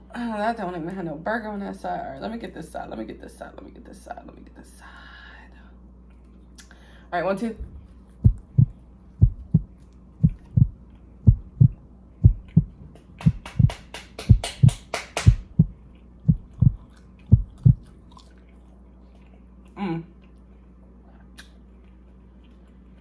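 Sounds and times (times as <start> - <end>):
heartbeat thumps: 7.6 - 17.9.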